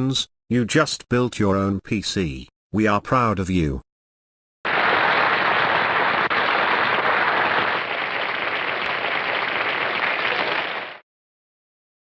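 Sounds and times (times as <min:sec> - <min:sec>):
crowd applause: 0:04.7 - 0:11.0.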